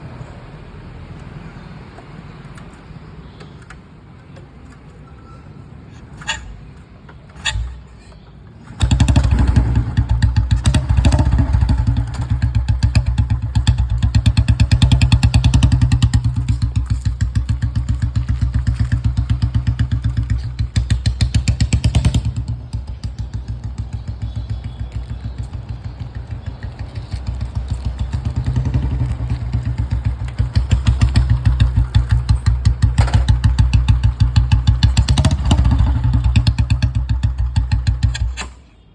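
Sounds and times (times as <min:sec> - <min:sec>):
motorcycle engine running: 0:08.7 - 0:38.4.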